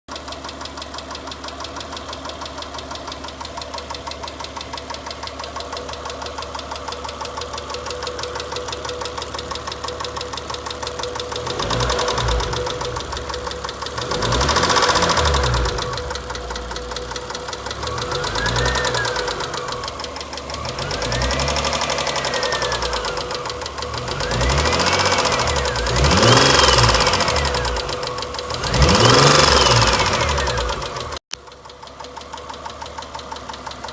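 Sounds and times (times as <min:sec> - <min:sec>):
car engine idling with knock: 0:00.1 - 0:33.9
engine revving with whine: 0:11.2 - 0:31.2.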